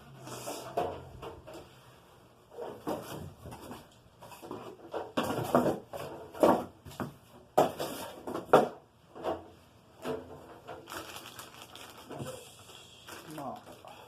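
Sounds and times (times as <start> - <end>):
hard objects knocking and clacking: 4.4 - 9.4.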